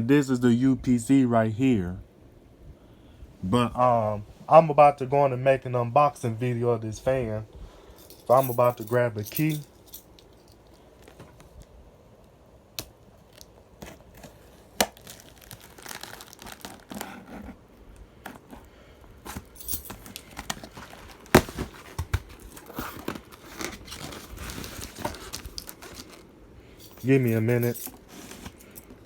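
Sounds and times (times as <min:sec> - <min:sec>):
cardboard packaging tearing and crinkling: 0:13.2 - 0:17.6, 0:18.3 - 0:26.3, 0:27.8 - 0:29.0.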